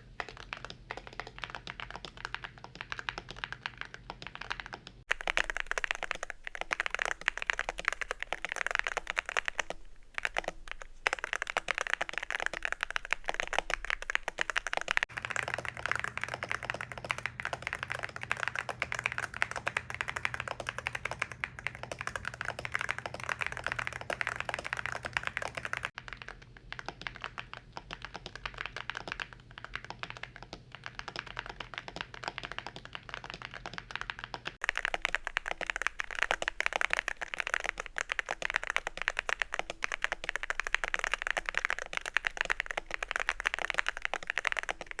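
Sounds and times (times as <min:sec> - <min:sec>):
mechanical keyboard typing: 0:00.1 - 0:05.6, 0:15.1 - 0:36.4.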